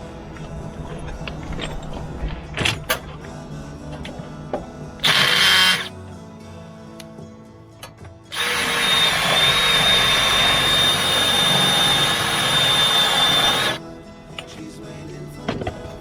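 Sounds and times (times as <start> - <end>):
power drill whining: 5.0 - 5.9, 7.8 - 13.8.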